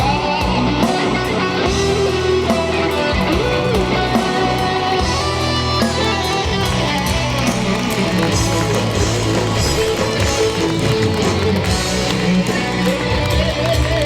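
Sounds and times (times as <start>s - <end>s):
band music with guitar: 0.0s - 14.0s.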